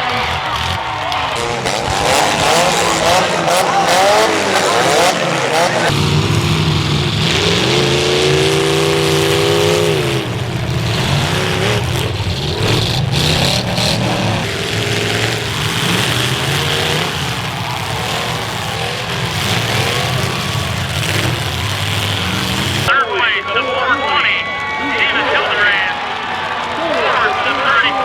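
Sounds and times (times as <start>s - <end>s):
car engines revving hard: 0.0s - 22.9s.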